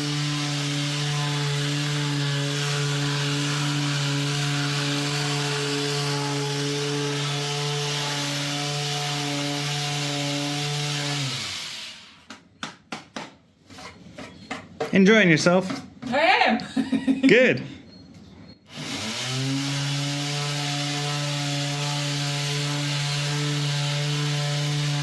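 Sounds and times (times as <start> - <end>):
power tool running on wood: 0.0 - 12.1, 18.7 - 25.0.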